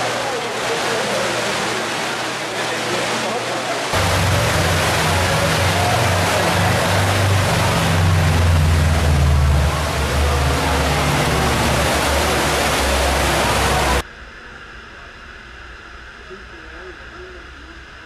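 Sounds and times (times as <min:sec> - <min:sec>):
car engine drone: 0:03.9 - 0:15.6.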